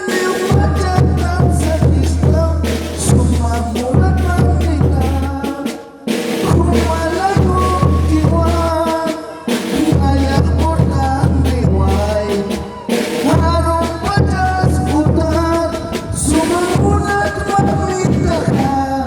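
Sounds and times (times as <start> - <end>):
drum and cymbal hits: 0.0 - 18.9
brass melody: 6.1 - 9.0.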